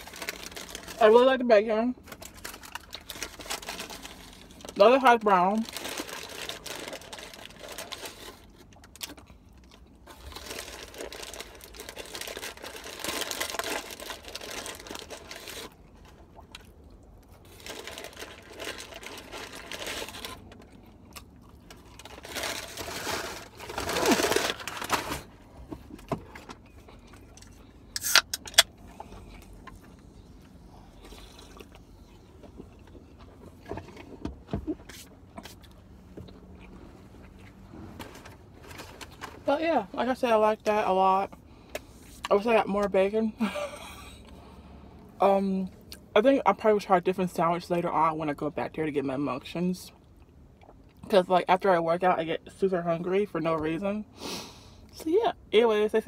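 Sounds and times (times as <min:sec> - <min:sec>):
person chewing: 0:26.7 - 0:33.7.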